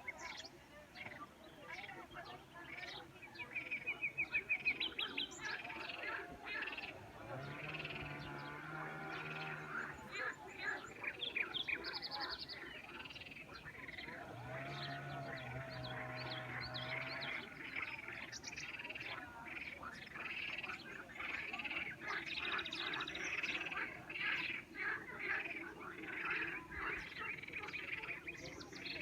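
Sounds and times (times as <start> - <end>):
birds chirping: 0.0 - 29.0.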